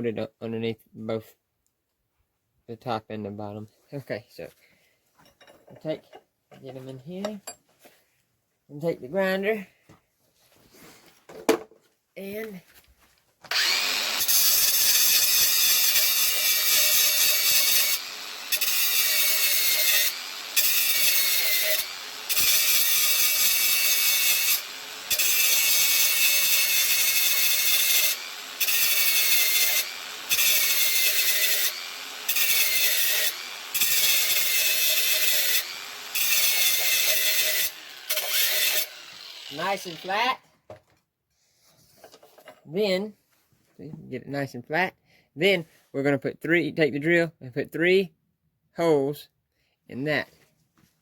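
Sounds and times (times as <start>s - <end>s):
angle grinder grinding steel: 13.5s - 40.4s.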